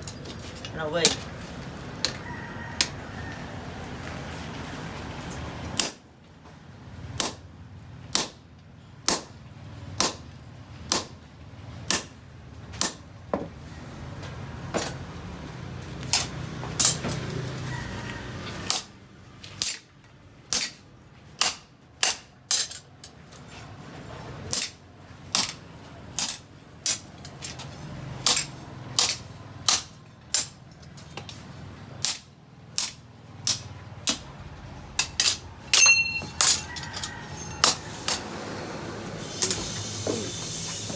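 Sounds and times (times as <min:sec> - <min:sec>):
hammer striking steel anvil: 0:35.0 - 0:38.2.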